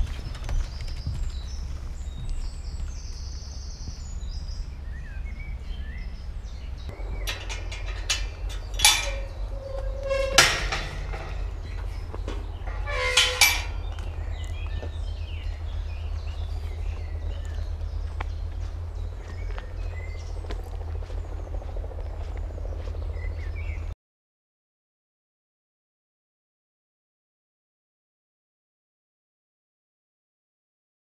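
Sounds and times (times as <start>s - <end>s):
low rumble: 0.0s - 23.9s.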